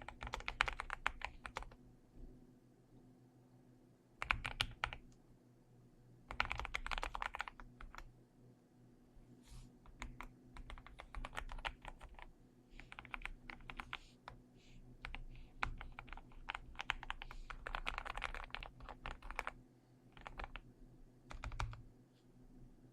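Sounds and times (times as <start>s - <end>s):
mechanical keyboard typing: 0.0s - 1.8s, 4.2s - 5.2s, 6.3s - 8.1s, 9.9s - 14.4s, 15.0s - 19.6s, 20.2s - 20.6s, 21.3s - 21.9s.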